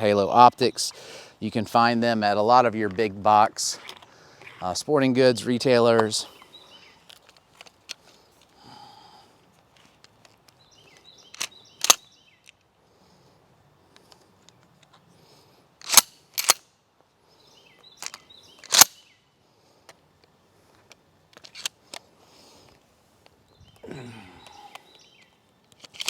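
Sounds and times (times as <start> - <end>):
pump shotgun metallic clacks: 15.8 - 16.6, 18.7 - 19.0.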